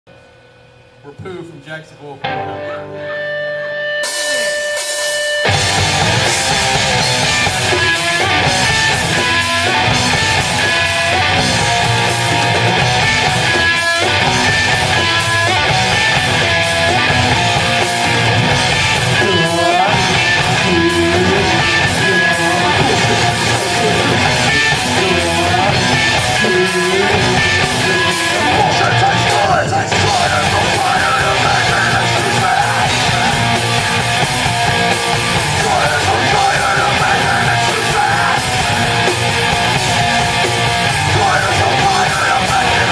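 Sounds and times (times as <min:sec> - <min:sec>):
held electric guitar note: 0:02.1 - 0:29.2
rock band playing live: 0:02.2 - 0:42.9.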